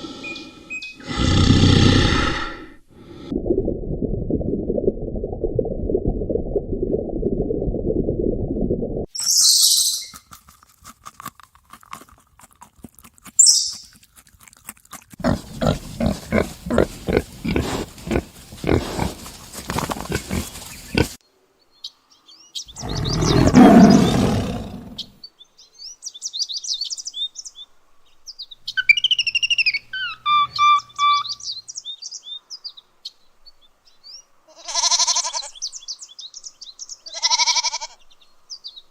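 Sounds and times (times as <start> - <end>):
birds chirping: 0.0 - 1.4, 9.2 - 10.2, 13.4 - 13.9, 15.2 - 21.2, 21.8 - 25.2, 28.3 - 32.7
animal hisses: 0.0 - 3.3, 15.2 - 21.2
rhythmic animal pulses: 15.0 - 21.2.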